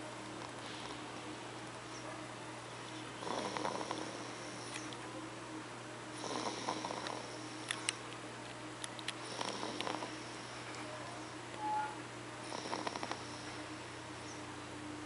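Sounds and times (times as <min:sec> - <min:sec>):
rasping snores with whistle: 0:03.2 - 0:04.3, 0:06.2 - 0:07.3, 0:12.5 - 0:13.6.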